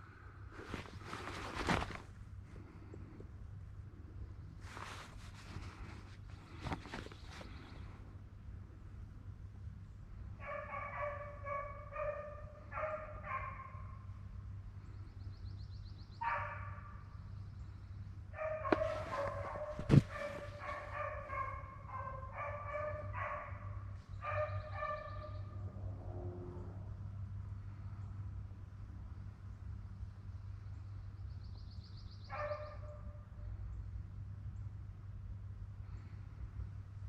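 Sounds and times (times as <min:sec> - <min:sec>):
hounds baying: 0:10.4 - 0:14.0, 0:18.4 - 0:26.7, 0:32.3 - 0:33.1.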